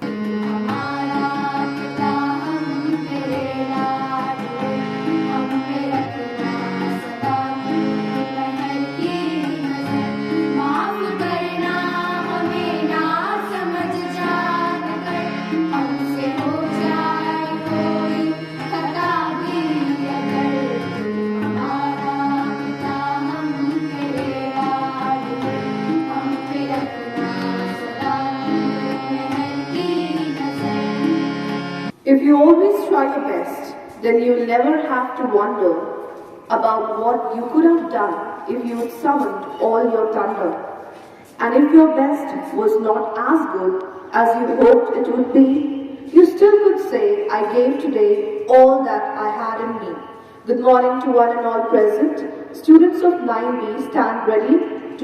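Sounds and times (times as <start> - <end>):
person singing prayer song: 0.0 - 31.6.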